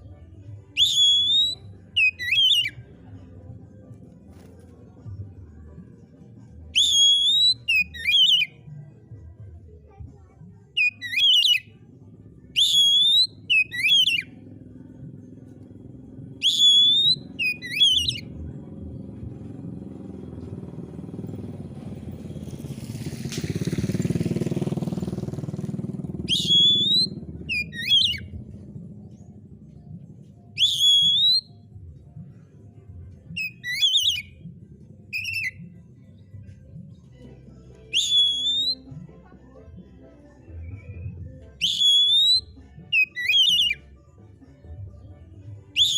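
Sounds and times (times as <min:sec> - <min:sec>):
low steady rumble: 0:00.0 - 0:45.9
bird singing whistled phrases: 0:00.8 - 0:02.8, 0:06.8 - 0:08.5, 0:10.8 - 0:11.7, 0:12.6 - 0:14.3, 0:16.4 - 0:18.3, 0:26.2 - 0:28.3, 0:30.6 - 0:31.6, 0:33.4 - 0:34.4, 0:35.1 - 0:35.8, 0:37.9 - 0:39.0, 0:40.6 - 0:43.8
broad noise: 0:10.8 - 0:31.7.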